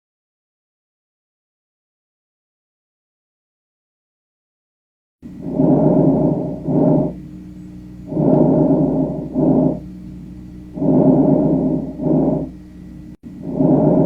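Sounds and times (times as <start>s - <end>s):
faint steady hum: 5.2s - 14.0s
chest breath sounds: 5.3s - 7.2s, 8.1s - 12.6s, 13.3s - 14.0s.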